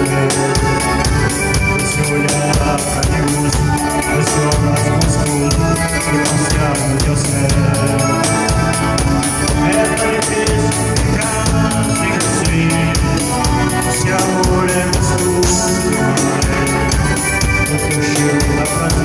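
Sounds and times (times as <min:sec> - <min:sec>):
instrumental dance band music: 0:00.0 - 0:19.0.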